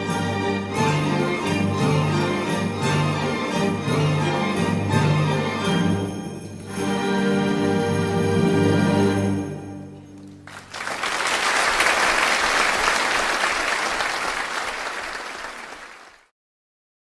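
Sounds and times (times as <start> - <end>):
audience applause: 10.2 - 16.3.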